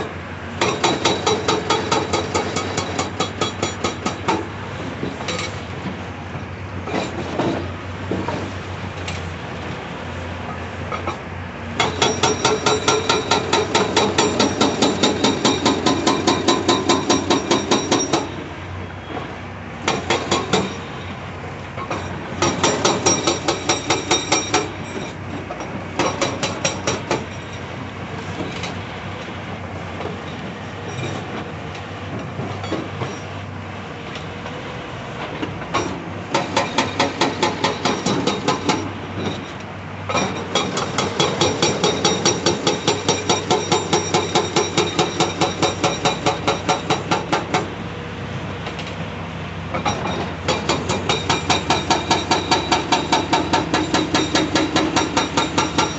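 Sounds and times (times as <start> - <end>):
excavator engine running: 0.0 - 55.9
hydraulic breaker hammering rock: 0.6 - 5.6, 11.8 - 18.5, 19.8 - 21.0, 21.8 - 27.6, 35.2 - 47.8, 49.7 - 55.9.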